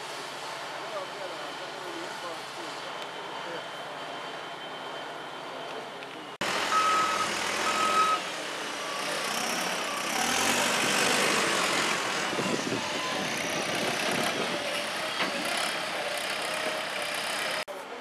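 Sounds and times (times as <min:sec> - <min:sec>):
engines and site machinery: 0:00.0 - 0:18.0
backup alarm beeping: 0:06.7 - 0:08.2.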